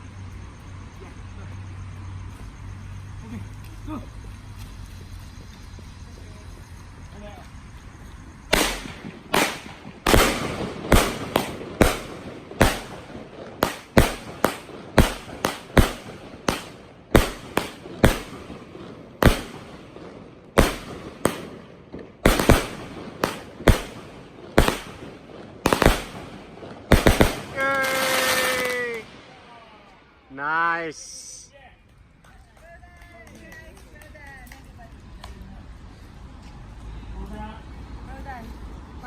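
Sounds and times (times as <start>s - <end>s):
firework bangs: 8.4s - 30.4s.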